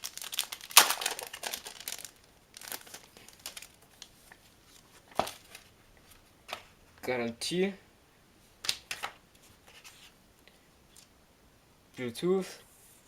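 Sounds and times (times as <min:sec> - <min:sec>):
paper rustling and crinkling: 0:00.0 - 0:06.7.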